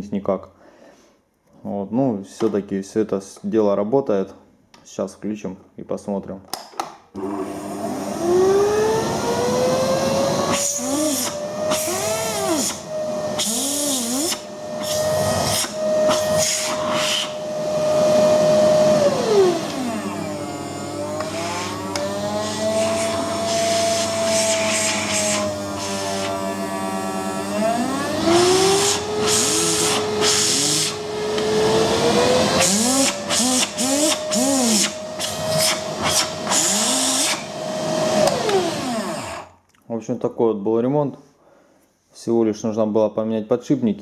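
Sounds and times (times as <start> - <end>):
vacuum cleaner motor whine: 7.2 - 39.5.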